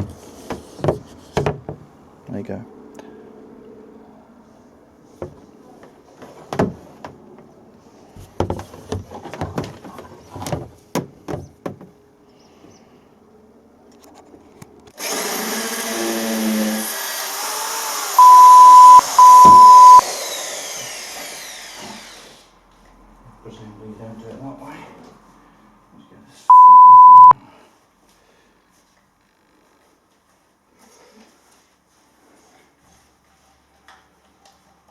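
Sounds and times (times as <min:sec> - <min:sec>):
hammer drill motor running: 0:15.0 - 0:22.2
high beeps: 0:18.2 - 0:20.0, 0:26.5 - 0:27.4.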